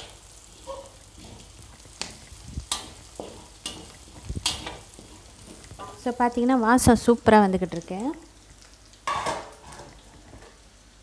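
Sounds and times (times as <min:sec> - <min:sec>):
spatula scraping and knocking pan: 0:00.0 - 0:06.2, 0:09.1 - 0:10.6
vegetables sizzling in butter: 0:00.0 - 0:11.0.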